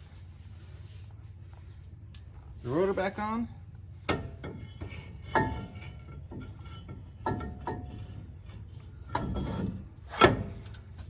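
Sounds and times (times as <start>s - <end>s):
metal clanks with short ring: 4.1s - 8.2s.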